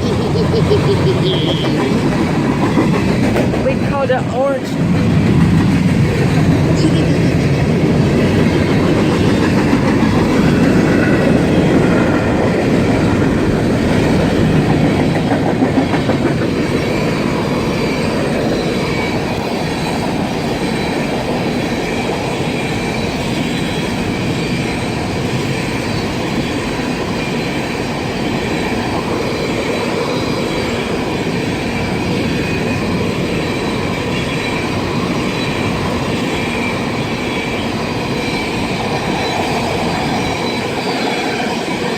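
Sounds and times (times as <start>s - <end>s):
train wheels rumbling on rails: 0.0s - 41.9s
high wheel squeal: 1.0s - 2.0s, 16.8s - 41.9s.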